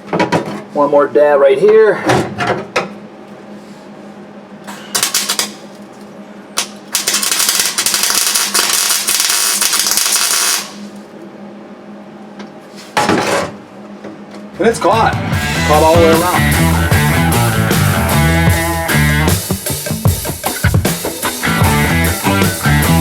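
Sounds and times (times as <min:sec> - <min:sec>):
steady low hum: 0:00.0 - 0:23.0
arc welder crackling: 0:04.9 - 0:05.9, 0:06.6 - 0:11.1.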